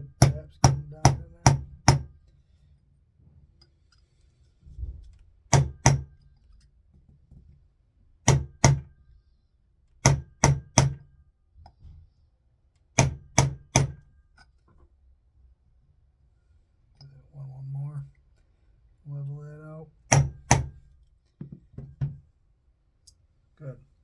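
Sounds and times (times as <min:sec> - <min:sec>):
hammer tapping metal punch: 0:00.0 - 0:02.2, 0:05.5 - 0:06.2, 0:08.2 - 0:09.0, 0:10.0 - 0:11.1, 0:13.0 - 0:14.2, 0:20.1 - 0:20.8.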